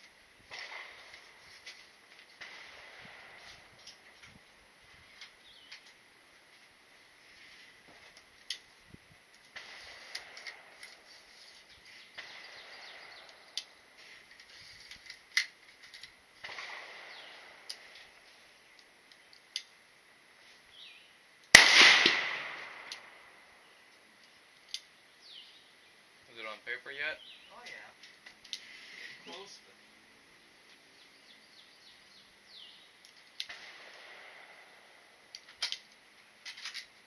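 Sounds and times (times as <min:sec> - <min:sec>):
faint sharp cracks: 0:00.0 - 0:04.4, 0:09.3 - 0:19.8, 0:21.4 - 0:25.0, 0:33.0 - 0:37.0
gunshot: 0:00.5 - 0:01.4, 0:02.4 - 0:03.8, 0:09.5 - 0:10.8, 0:12.2 - 0:13.2, 0:16.4 - 0:17.7, 0:21.5 - 0:23.2, 0:33.5 - 0:34.9
soft hissing: 0:01.0 - 0:21.4, 0:22.8 - 0:37.0.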